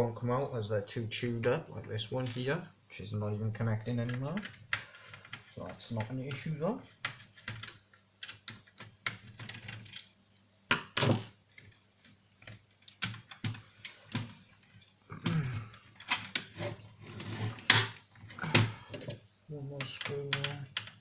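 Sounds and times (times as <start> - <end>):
small parts clicking and clattering: 7.0 - 16.6.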